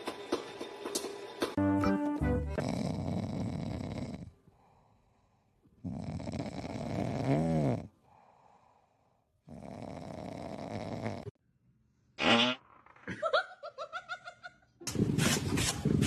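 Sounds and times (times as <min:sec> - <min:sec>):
pet snoring: 0:02.5 - 0:04.5, 0:05.8 - 0:08.5, 0:09.4 - 0:11.4.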